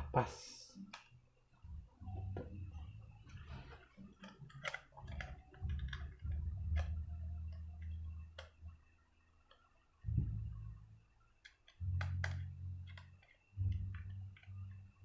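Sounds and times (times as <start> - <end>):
low handling rumble: 1.5 - 9.2, 10.0 - 11.2, 11.8 - 15.0
small clicks and taps: 3.3 - 8.8, 11.4 - 15.0.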